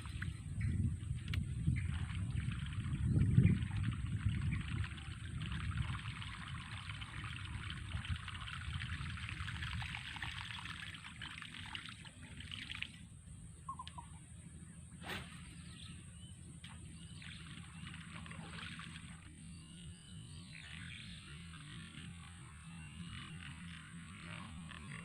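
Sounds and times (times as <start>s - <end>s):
water trickling and splashing: 0.0s - 13.2s, 16.6s - 19.4s.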